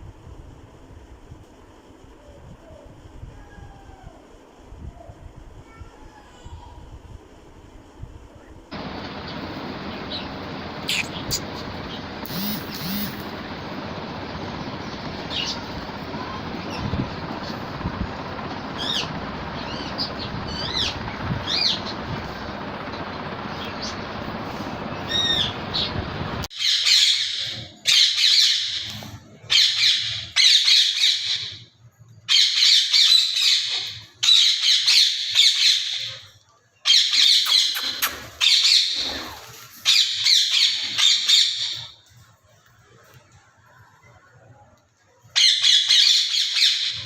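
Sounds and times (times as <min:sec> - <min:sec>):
steady background rumble: 0:02.6 - 0:26.5
small birds chirping: 0:08.7 - 0:27.0
parakeet squawking: 0:08.8 - 0:13.5.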